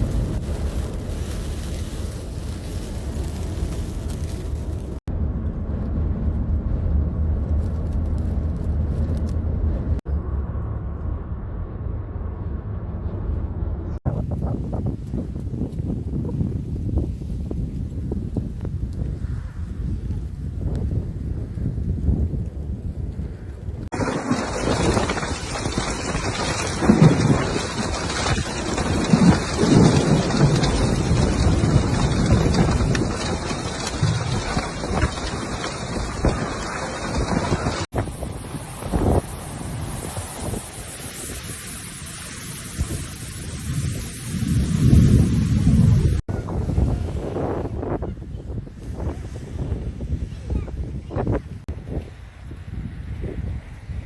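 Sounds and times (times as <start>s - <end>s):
heavy rain pouring: 0.0s - 5.0s, 23.9s - 46.2s
wind buffeting microphone: 0.0s - 10.1s, 13.1s - 54.0s
thunder rolling: 0.0s - 15.4s, 20.5s - 51.8s.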